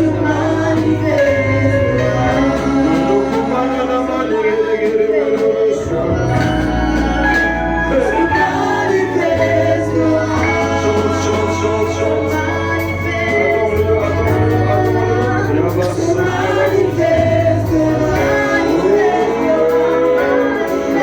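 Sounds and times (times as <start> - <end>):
low bass line: 0.0 - 21.0
person singing: 0.0 - 21.0
sustained chords: 5.8 - 21.0.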